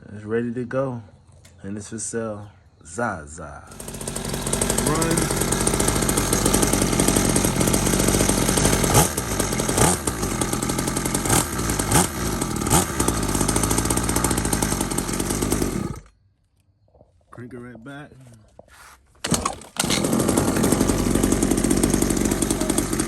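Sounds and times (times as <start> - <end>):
dirtbike engine revving: 3.7 - 16.1, 19.2 - 23.0.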